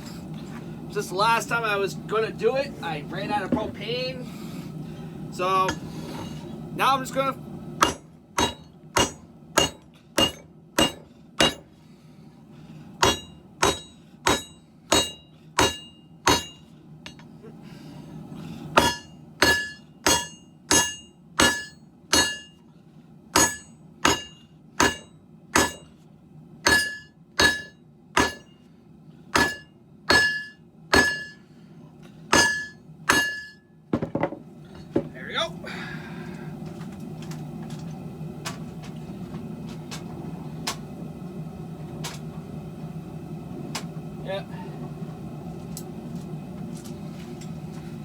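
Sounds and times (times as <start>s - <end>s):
hammer ringing on steel: 7.8s - 11.6s, 13.0s - 16.6s, 18.8s - 22.6s, 23.4s - 25.9s, 26.7s - 28.6s, 29.4s - 31.4s, 32.3s - 33.6s.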